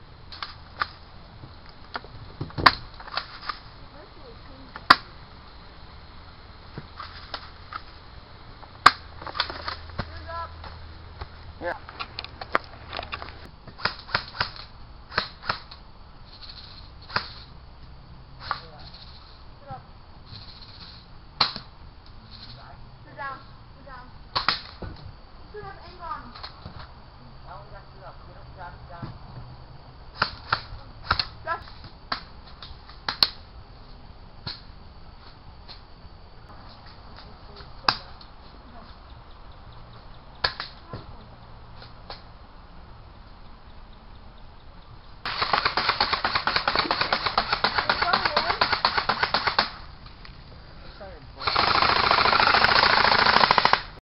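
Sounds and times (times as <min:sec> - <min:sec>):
airsoft gun shots: 0:13.8 - 0:15.7, 0:21.4 - 0:21.7, 0:24.4 - 0:24.8, 0:30.2 - 0:31.3, 0:45.3 - 0:49.8, 0:51.4 - 0:54.0.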